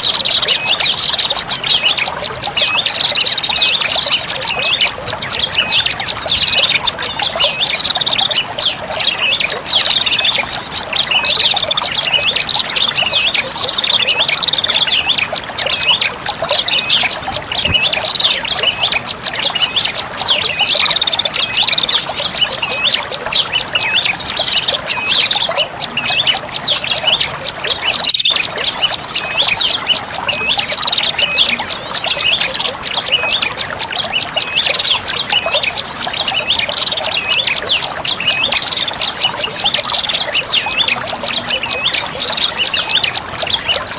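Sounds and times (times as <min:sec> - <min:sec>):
songbird chirping rapidly: 0:00.0 - 0:43.9.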